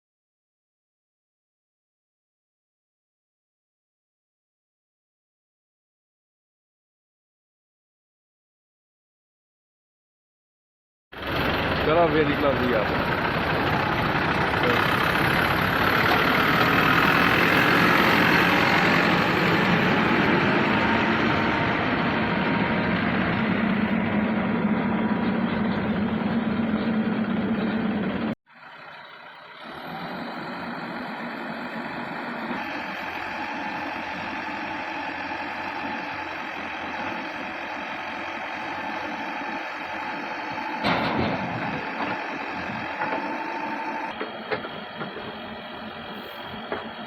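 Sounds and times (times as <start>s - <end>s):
heavy diesel engine running: 11.2s - 47.0s
quieter engine running: 11.2s - 47.0s.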